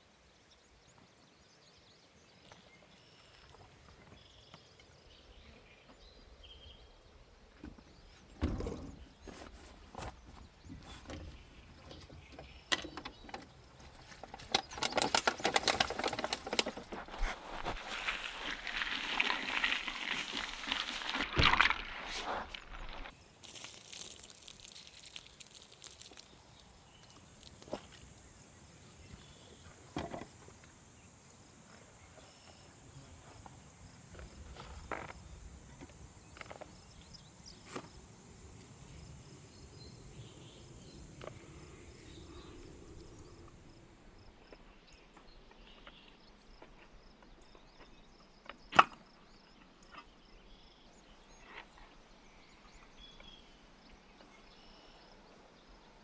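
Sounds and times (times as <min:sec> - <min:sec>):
rustling noise: 0:09.2 - 0:12.1, 0:13.8 - 0:28.1
footsteps: 0:16.7 - 0:26.3
high insect hiss: 0:17.4 - 0:21.3, 0:22.5 - 0:44.5.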